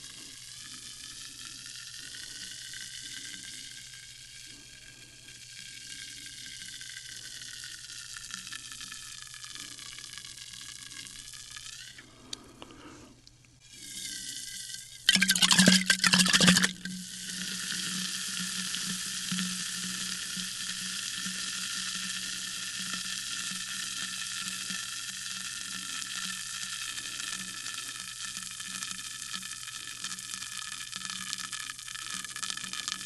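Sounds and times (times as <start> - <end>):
sparkling water fizzing: 13.9 - 33.0.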